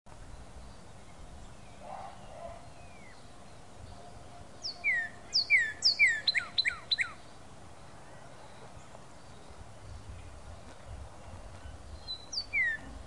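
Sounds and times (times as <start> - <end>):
cardinal singing whistled notes: 3.9 - 7.2, 12.0 - 12.8.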